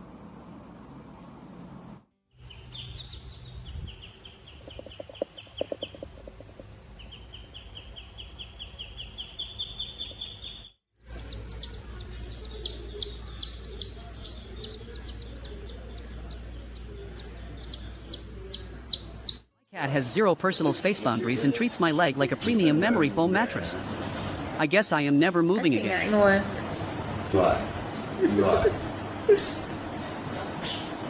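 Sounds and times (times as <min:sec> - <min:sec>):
small birds chirping: 0:02.3 - 0:19.5.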